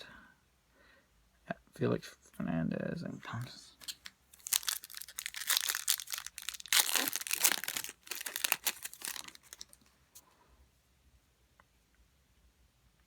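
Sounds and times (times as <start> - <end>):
foil wrapper crinkling and tearing: 3.8 - 9.9.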